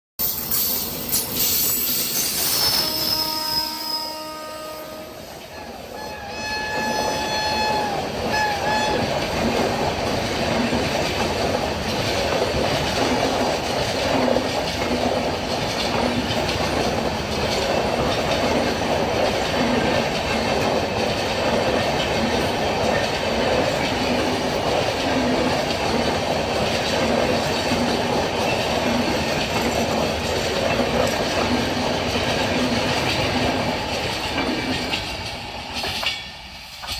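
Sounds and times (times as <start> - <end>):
train rumble: 0.2 - 36.9
locomotive air horn: 2.6 - 9.2.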